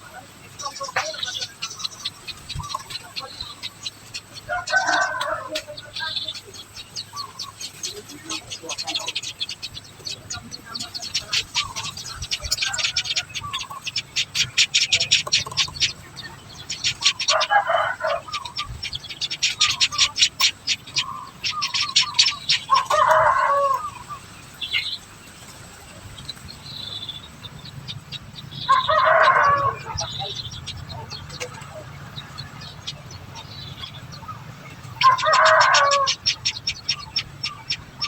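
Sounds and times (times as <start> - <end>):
small birds chirping: 0.0 - 38.0
rooster crowing: 4.4 - 6.2, 17.1 - 18.7, 22.3 - 24.2, 28.5 - 30.5, 34.9 - 36.4.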